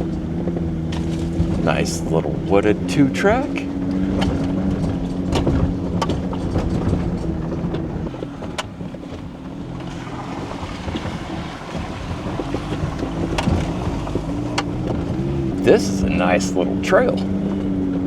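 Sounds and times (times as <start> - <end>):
sharp clicks and knocks: 0.0 - 9.3, 12.4 - 15.7
off-road vehicle engine running: 0.0 - 18.0.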